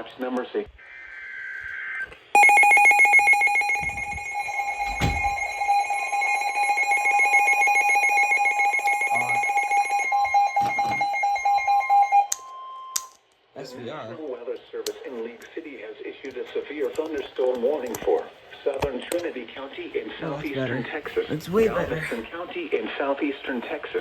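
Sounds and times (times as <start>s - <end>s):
harsh electronic alarm tone: 0.8s - 13.0s.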